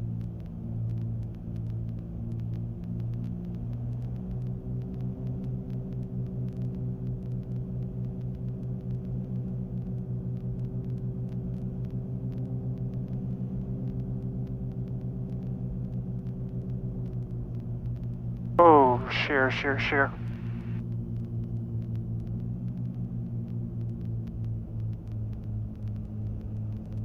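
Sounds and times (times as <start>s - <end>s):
propeller plane engines droning: 18.6s - 20.8s.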